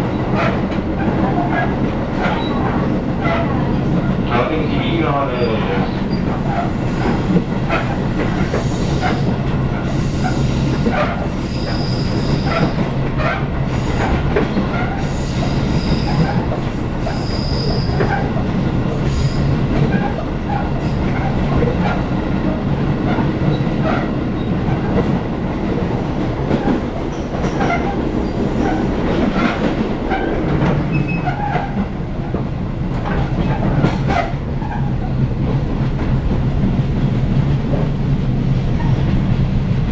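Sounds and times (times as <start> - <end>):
train car rumble: 0.0 - 39.9.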